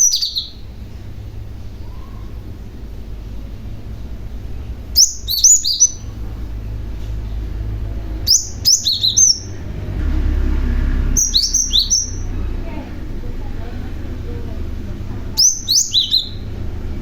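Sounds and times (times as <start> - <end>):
bird singing high whistled notes: 0.0 - 0.6, 5.0 - 6.1, 8.3 - 9.6, 11.0 - 12.3, 15.4 - 16.5
steady low hum: 0.0 - 17.0.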